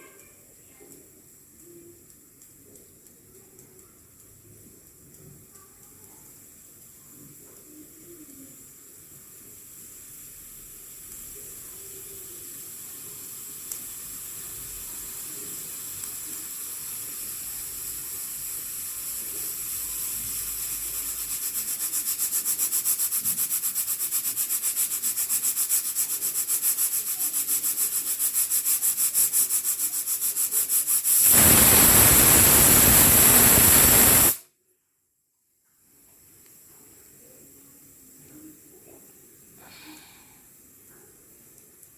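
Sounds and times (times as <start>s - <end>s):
pressure cooker steam hissing: 6.3s - 34.4s
pressure cooker whistle: 30.7s - 34.4s.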